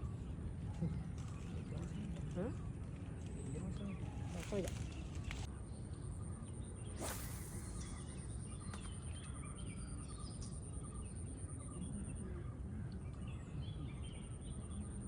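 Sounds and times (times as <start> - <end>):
faint bird chirps: 0.0 - 15.0
high-pitched insect drone: 6.9 - 8.7.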